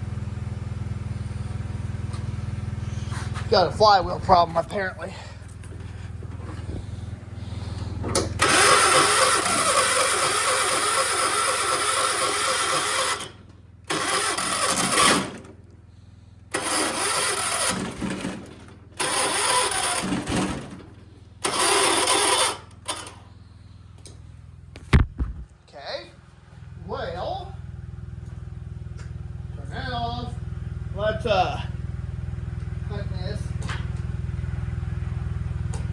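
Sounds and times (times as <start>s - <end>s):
steady low hum: 0.0s - 8.5s
electric starter cranking: 2.8s - 15.7s, 16.5s - 23.4s.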